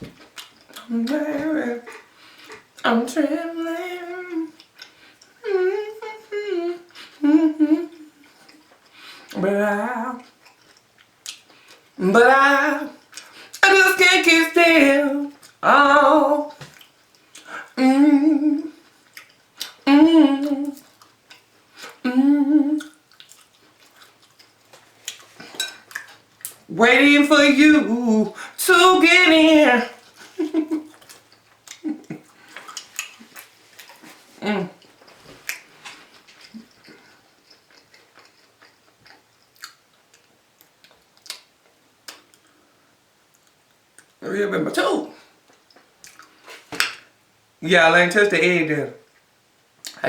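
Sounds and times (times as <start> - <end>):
person chewing: 0.0 - 2.9, 4.5 - 5.5, 10.2 - 12.0, 12.9 - 13.6, 16.5 - 17.8, 18.5 - 26.7, 28.3 - 42.6, 45.4 - 47.0
woman humming: 0.9 - 2.0, 2.9 - 4.6, 5.4 - 8.2, 17.6 - 18.8, 19.8 - 20.8, 22.0 - 22.9, 26.7 - 30.8, 34.4 - 34.8.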